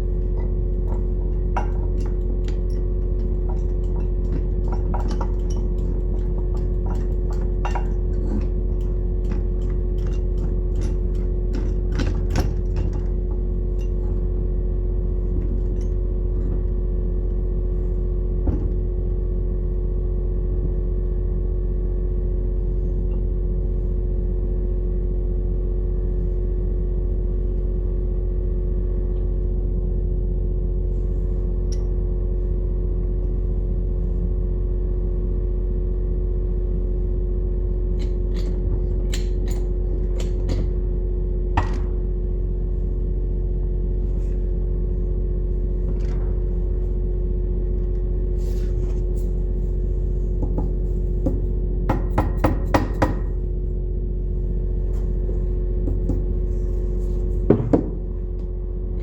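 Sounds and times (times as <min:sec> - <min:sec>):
low machine hum: 0:00.0 - 0:59.0
metal taps and knocks: 0:00.3 - 0:14.1.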